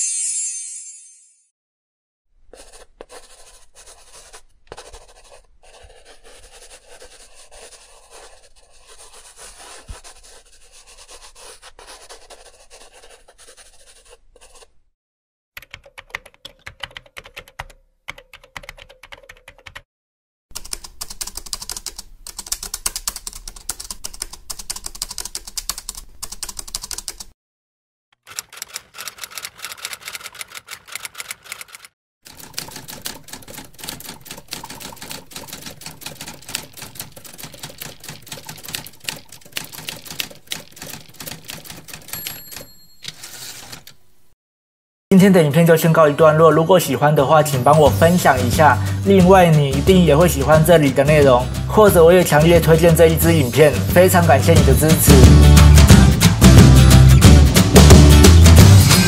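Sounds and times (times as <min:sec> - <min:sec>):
keyboard typing clicks: 0:28.3 - 0:42.7.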